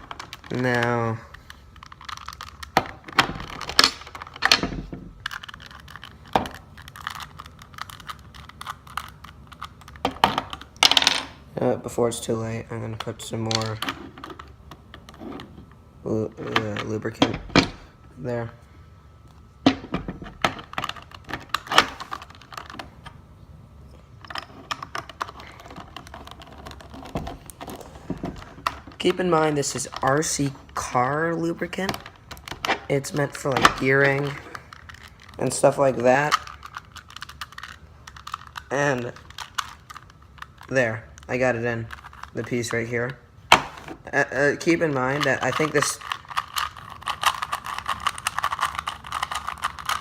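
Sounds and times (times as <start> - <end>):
plastic cube pieces snapping: 31.8 - 42.4, 44.8 - 50.0.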